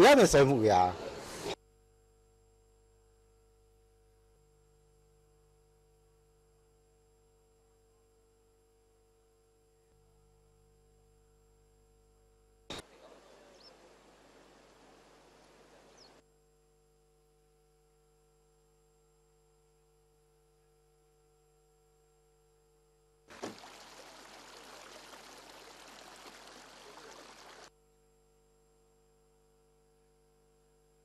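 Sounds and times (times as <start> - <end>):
faint steady hum: 0.0 - 31.0
rushing floodwater: 23.3 - 27.7.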